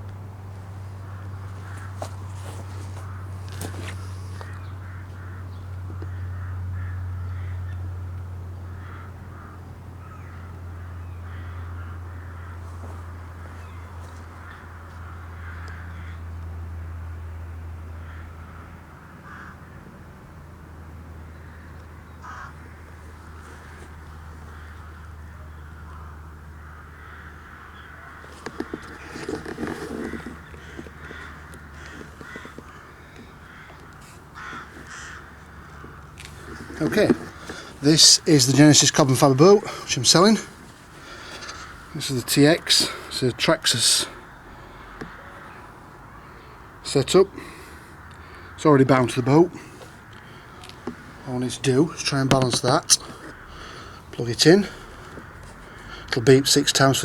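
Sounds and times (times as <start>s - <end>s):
birds making harsh calls: 0.0s - 17.1s, 18.0s - 19.8s, 21.2s - 57.0s
steady low hum: 0.0s - 57.0s.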